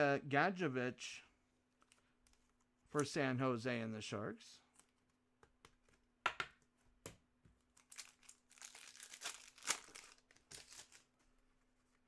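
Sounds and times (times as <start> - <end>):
trading cards rustling: 7.7 - 11.3.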